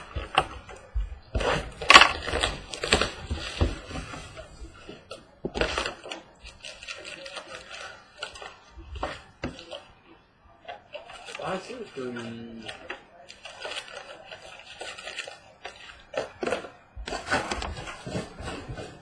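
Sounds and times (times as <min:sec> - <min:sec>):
packaging crinkling and tearing: 0:01.4 - 0:04.5, 0:05.6 - 0:09.8.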